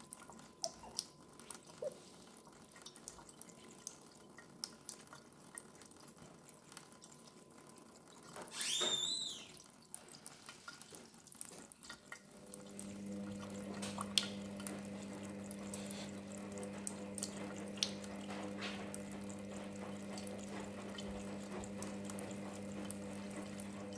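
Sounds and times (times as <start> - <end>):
cat lapping water: 0.1 - 8.3, 9.9 - 23.9
short high squeak: 8.5 - 9.6.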